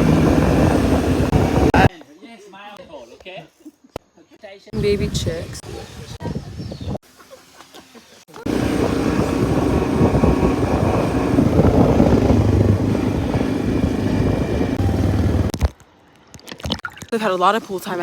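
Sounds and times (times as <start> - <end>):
atv engine running: 0.0 - 1.9, 8.5 - 15.6.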